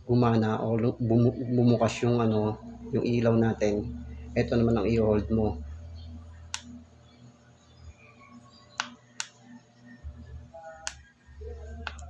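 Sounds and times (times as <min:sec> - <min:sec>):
faint low hum: 0:00.0 - 0:12.0.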